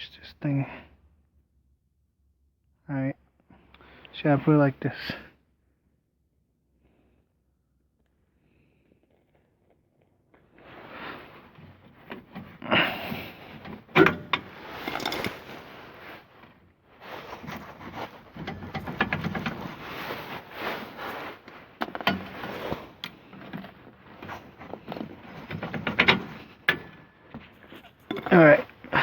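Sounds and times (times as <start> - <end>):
metal parts scraping and rattling: 13.6 - 16.4, 17.1 - 29.0.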